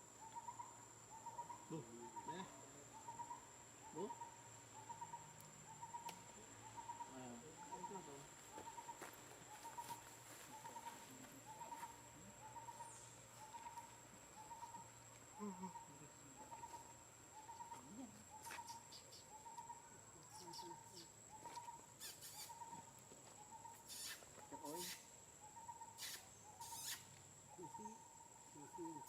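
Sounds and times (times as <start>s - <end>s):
faint clicks: 5.4s - 6.3s
faint short calls: 9.7s - 22.9s, 23.6s - 25.1s, 25.8s - 28.0s.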